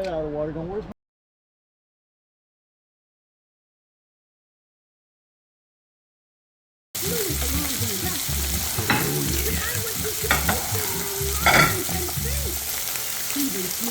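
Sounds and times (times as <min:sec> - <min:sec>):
food sizzling in a pan: 0:07.0 - 0:13.9
cooking utensil clattering: 0:07.4 - 0:12.8.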